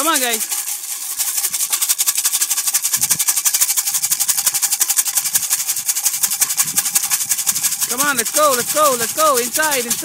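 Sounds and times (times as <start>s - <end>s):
grain rattling in a can: 0.0s - 10.0s.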